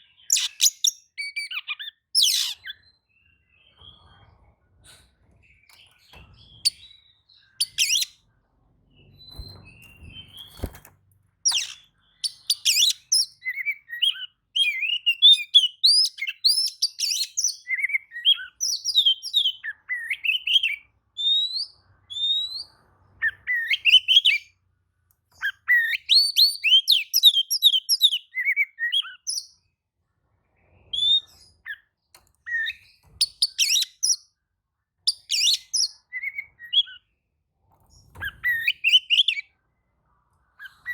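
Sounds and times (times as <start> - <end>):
bird singing whistles and chirps: 0.0 - 3.9, 5.7 - 8.2, 9.0 - 10.8, 11.5 - 24.5, 25.4 - 29.6, 32.5 - 34.3, 35.1 - 37.1, 38.2 - 39.5, 40.6 - 40.9.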